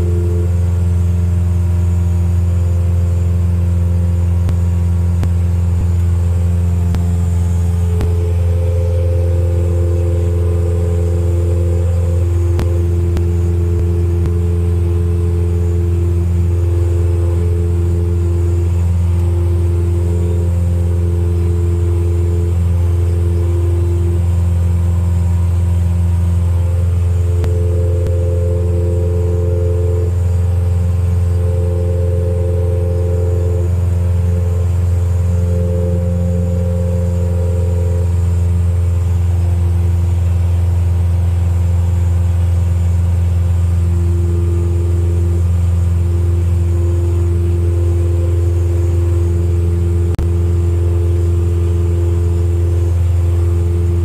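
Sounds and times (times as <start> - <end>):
light aircraft engine drone: 0.0 - 54.0.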